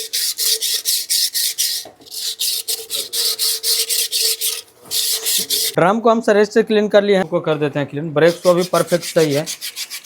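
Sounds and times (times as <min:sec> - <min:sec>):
sandpaper scrubbing metal drum: 0:00.0 - 0:05.8, 0:08.3 - 0:10.0.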